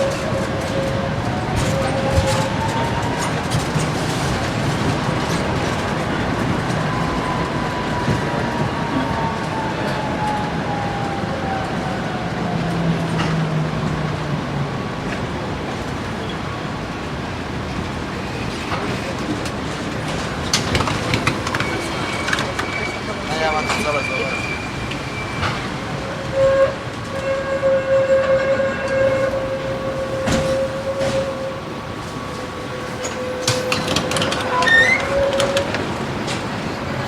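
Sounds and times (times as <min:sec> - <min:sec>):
rail clicks: 0:00.0 - 0:10.4, 0:17.7 - 0:27.4, 0:29.1 - 0:37.0
faint tram whine: 0:00.0 - 0:37.0
tram rumbling on rails: 0:00.0 - 0:37.0.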